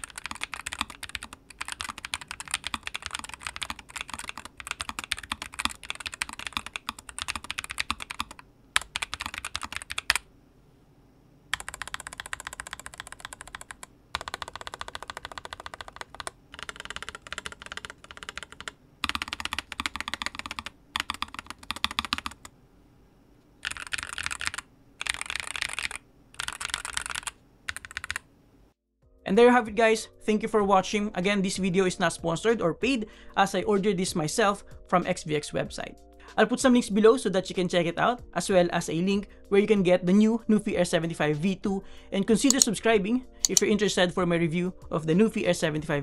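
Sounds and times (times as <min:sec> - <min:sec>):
mechanical keyboard key clacks: 0:43.4 - 0:43.6.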